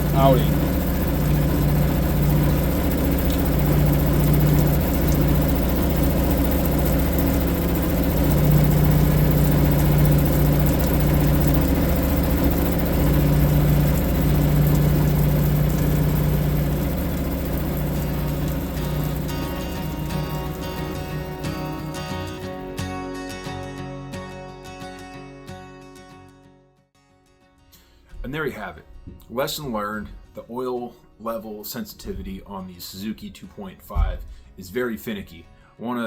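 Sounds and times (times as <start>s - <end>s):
outboard motor idling: 0.0s - 22.8s.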